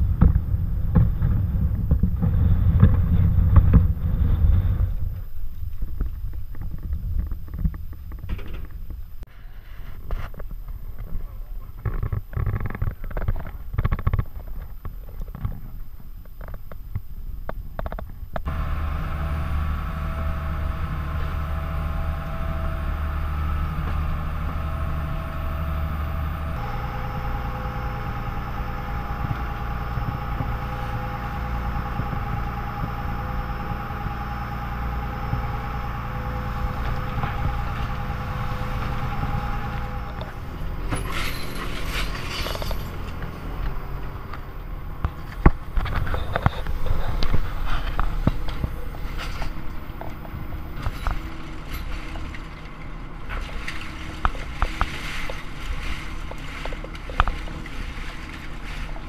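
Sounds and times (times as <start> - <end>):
boat engine droning: 0.0 - 8.2, 17.8 - 59.0
wind noise: 0.0 - 19.2.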